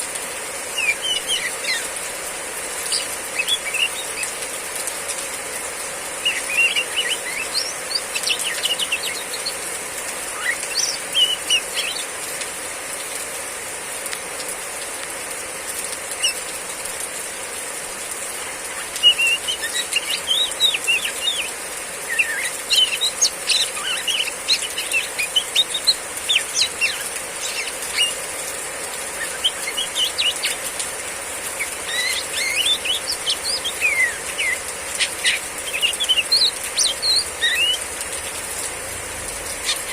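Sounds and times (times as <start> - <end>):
bird high chirping calls: 0.7 - 2.1, 2.8 - 4.5, 6.2 - 9.7, 10.3 - 12.1, 16.2 - 16.4, 18.4 - 30.8, 31.5 - 38.0, 39.4 - 39.9
steady high hiss: 13.8 - 39.9.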